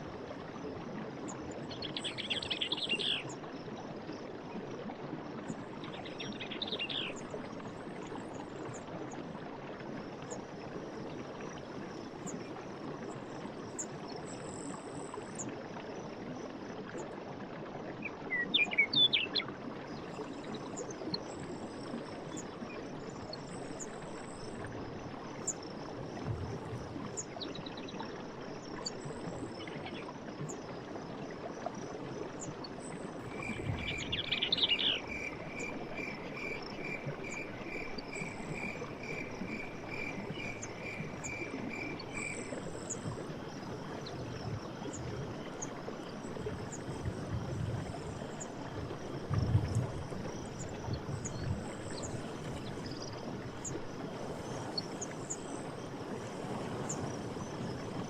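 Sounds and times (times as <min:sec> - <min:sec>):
insect chirps: 0:18.3 - 0:58.0
birds calling: 0:33.4 - 0:36.6.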